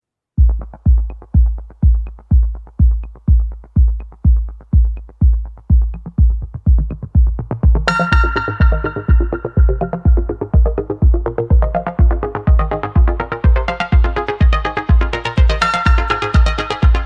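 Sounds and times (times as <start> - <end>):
deep kick drum: 0.4 - 17.0
bright synth chords: 7.5 - 17.0.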